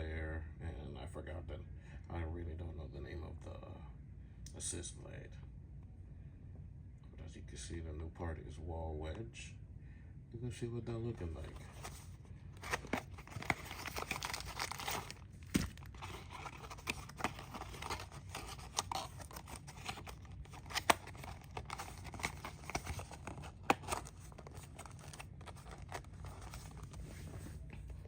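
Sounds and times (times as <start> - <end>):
cardboard and plastic crinkling: 11.4 - 28.0.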